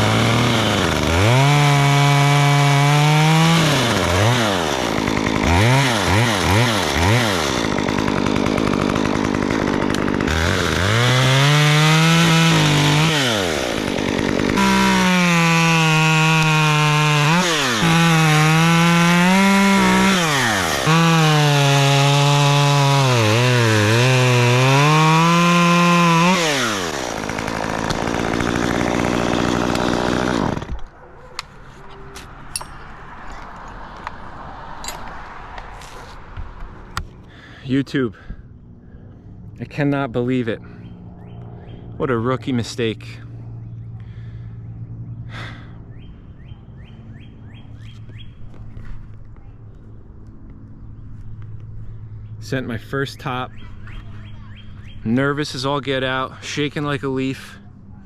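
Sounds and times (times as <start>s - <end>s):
chainsaw cutting wood: 0.0s - 31.0s.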